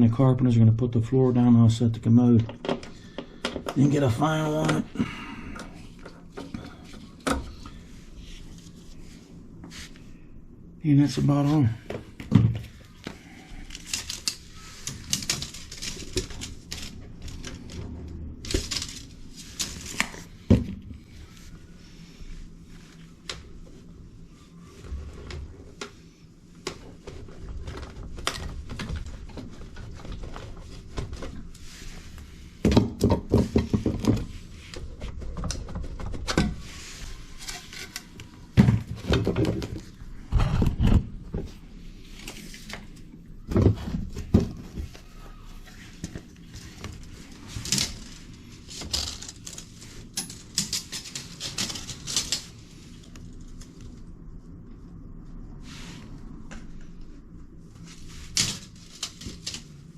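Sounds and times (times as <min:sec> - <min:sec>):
objects knocking and clattering: 0:32.6 - 0:34.4, 0:38.6 - 0:41.5.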